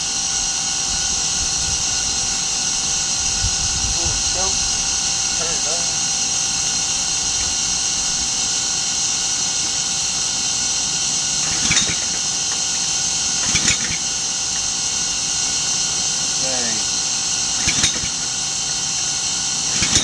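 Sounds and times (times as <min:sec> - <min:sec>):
pressure washer engine: 0:00.0 - 0:20.0
high spray hiss: 0:15.6 - 0:17.8.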